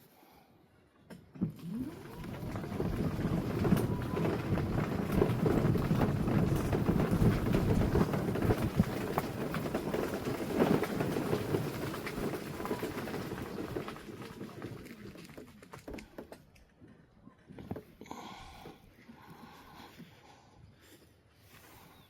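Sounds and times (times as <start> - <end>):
vehicle on gravel road: 1.6 - 16.9.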